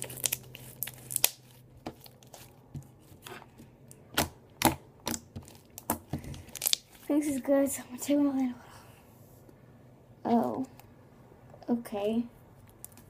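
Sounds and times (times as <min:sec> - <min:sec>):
slime kneaded by hand: 0:00.0 - 0:07.2.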